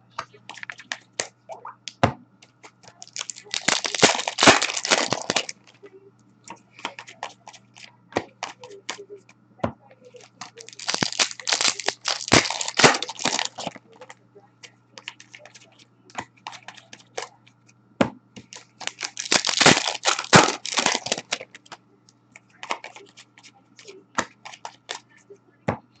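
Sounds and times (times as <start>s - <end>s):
faint low hum: 0.0s - 26.0s
foil wrappers tearing and crinkling: 3.0s - 5.7s, 10.2s - 13.8s, 18.5s - 21.7s.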